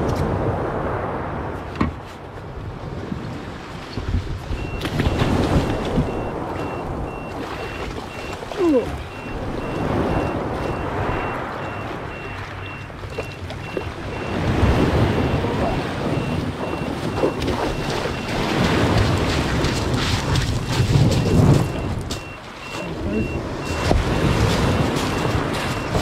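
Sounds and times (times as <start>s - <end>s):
sea and water noise: 0.0s - 26.0s
wind buffeting microphone: 0.0s - 26.0s
faint high electronic beep: 4.6s - 14.4s, 15.2s - 18.4s, 20.6s - 23.9s.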